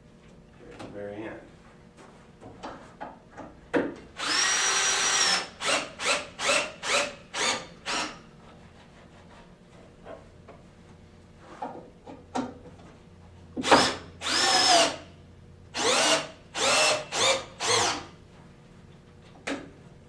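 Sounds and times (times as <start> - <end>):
power drill driving bolts: 4.2 - 8.2, 13.6 - 15.0, 15.8 - 18.1.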